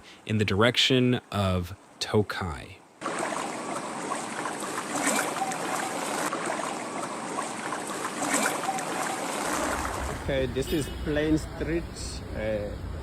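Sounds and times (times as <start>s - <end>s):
wind: 0.0s - 13.0s
rushing water: 2.9s - 13.0s.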